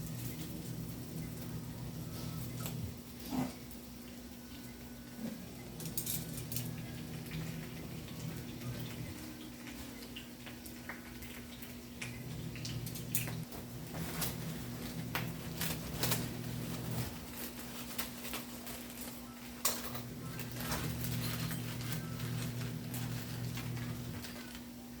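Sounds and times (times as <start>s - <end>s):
steady low hum: 0.0s - 18.1s, 18.7s - 25.0s
utensils clinking against dishes: 5.2s - 24.7s.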